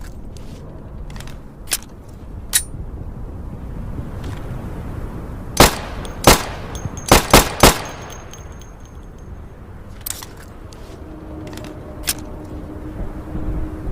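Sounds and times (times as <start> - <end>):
pistol shots: 5.6 - 8.4.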